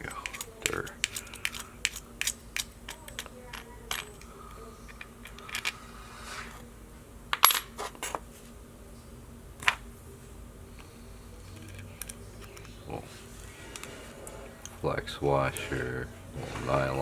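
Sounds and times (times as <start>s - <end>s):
small metal parts clinking: 0.0s - 5.8s, 11.5s - 12.8s.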